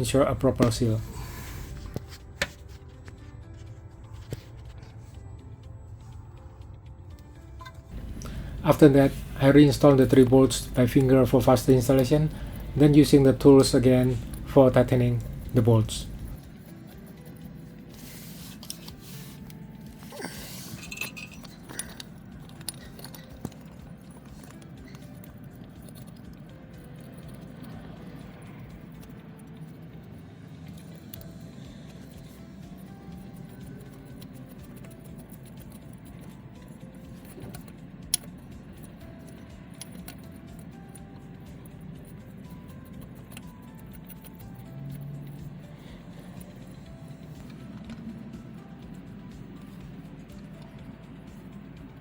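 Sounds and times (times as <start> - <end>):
metal tools clinking and scraping: 7.6 - 17.6, 18.5 - 31.3.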